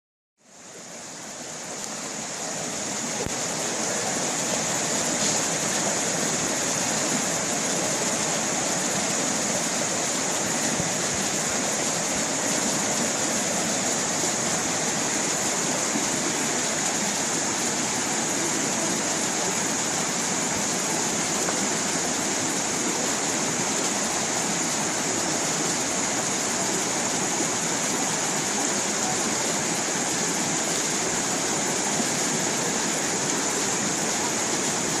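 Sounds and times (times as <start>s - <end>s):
stream of water rushing: 0.4s - 35.0s.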